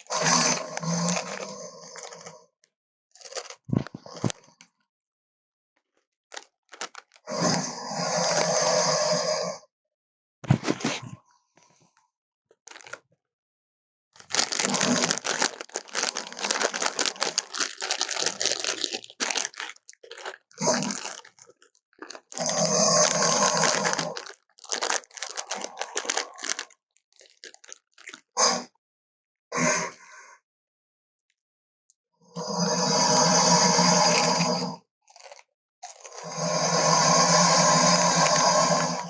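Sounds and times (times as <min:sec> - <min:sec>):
crunching and crackling: 0:00.0 - 0:02.3, 0:03.1 - 0:04.6, 0:06.3 - 0:08.7, 0:12.5 - 0:13.0, 0:14.2 - 0:28.4, 0:34.0 - 0:39.0.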